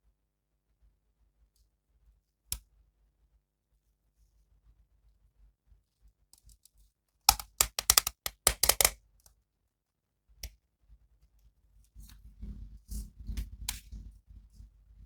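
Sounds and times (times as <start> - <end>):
plastic clicks and crackles: 7.3 - 9.0.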